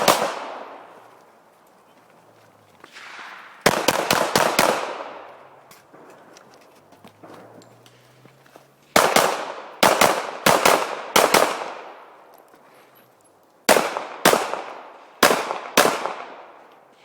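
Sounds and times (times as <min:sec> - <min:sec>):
pistol shots with echo: 0:00.0 - 0:00.9, 0:02.9 - 0:05.4, 0:09.0 - 0:12.1, 0:13.7 - 0:16.6.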